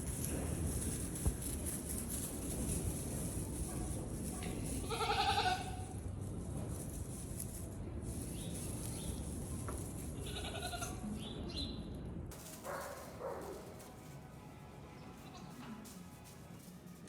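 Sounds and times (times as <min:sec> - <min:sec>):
baby goats bleating: 0:04.7 - 0:06.0, 0:10.1 - 0:11.1.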